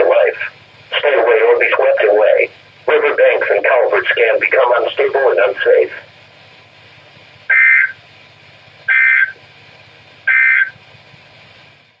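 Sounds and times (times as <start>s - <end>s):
harsh digital squawk bursts: 7.5s - 8.0s, 8.9s - 9.4s, 10.3s - 10.8s.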